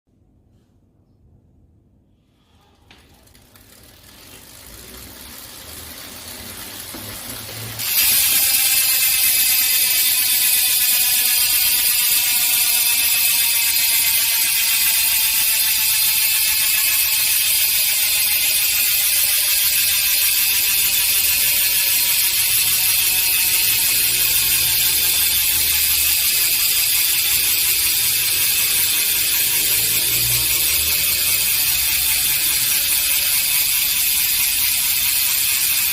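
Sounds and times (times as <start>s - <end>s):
bicycle freehub buzzing: 2.3s - 35.9s.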